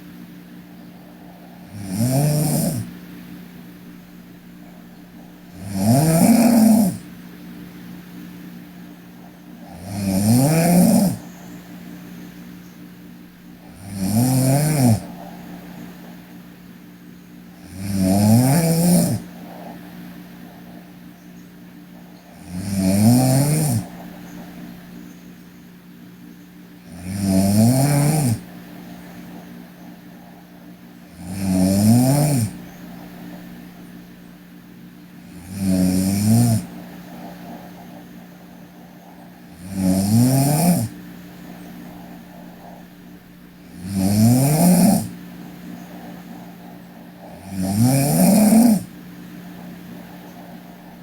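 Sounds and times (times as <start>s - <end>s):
steady low hum: 0.0s - 51.0s
girl snoring: 1.0s - 3.0s, 4.0s - 7.1s, 9.2s - 11.3s, 13.6s - 16.1s, 17.6s - 19.8s, 22.0s - 24.8s, 26.9s - 28.5s, 29.3s - 33.8s, 35.2s - 45.2s, 45.9s - 49.0s.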